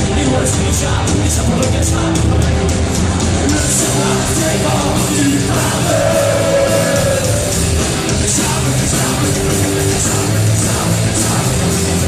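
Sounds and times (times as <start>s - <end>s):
rock band playing live: 0.0s - 12.0s.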